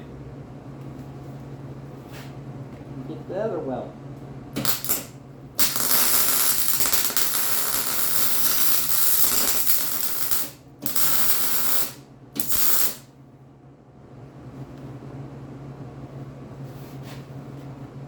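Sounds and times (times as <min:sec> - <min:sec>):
steady low hum: 0:00.0 - 0:18.0
welder crackling: 0:04.6 - 0:13.0.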